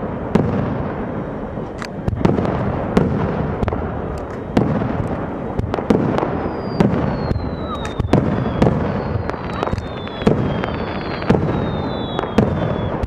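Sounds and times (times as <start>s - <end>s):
fireworks bursting: 0.0s - 13.0s
high whistle sliding down: 6.4s - 13.0s.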